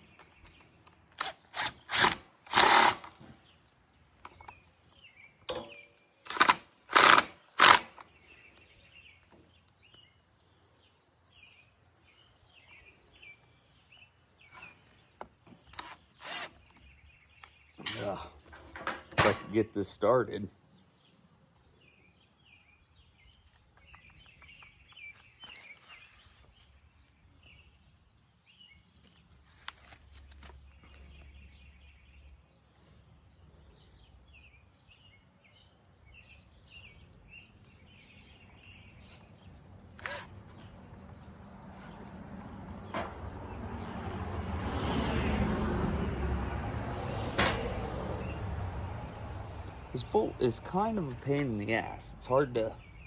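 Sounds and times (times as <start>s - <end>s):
birds chirping: 0.0s - 53.0s.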